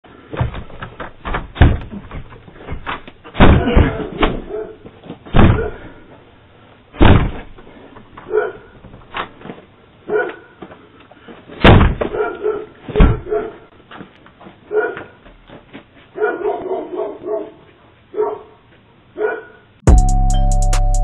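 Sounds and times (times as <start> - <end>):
heavy bangs on a door: 1.2 - 4.4, 5.3 - 5.8, 7.0 - 7.6, 11.6 - 12.2, 12.9 - 13.3.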